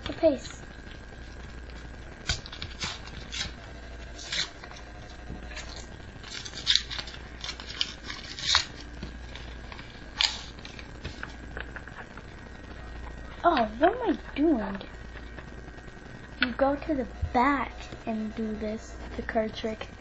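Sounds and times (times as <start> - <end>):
paper crinkling and rustling: 5.4 - 11.8.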